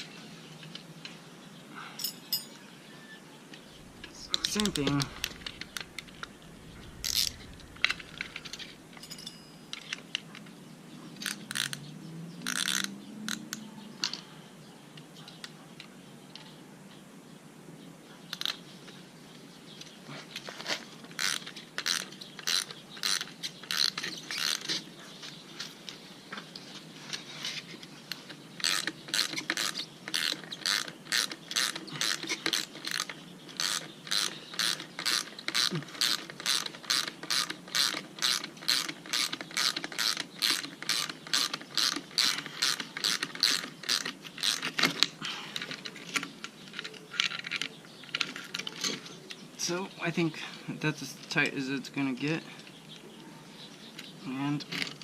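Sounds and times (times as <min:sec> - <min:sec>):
ratchet wrench clicking: 0:11.2 - 0:11.8, 0:12.4 - 0:13.4, 0:21.2 - 0:24.6, 0:28.6 - 0:44.7.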